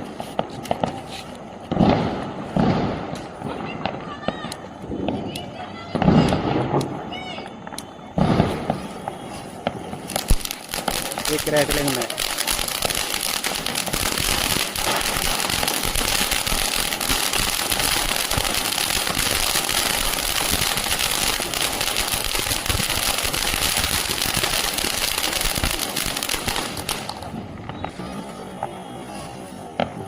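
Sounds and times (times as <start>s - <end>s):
fountain firework hissing and crackling: 0.0s - 30.0s.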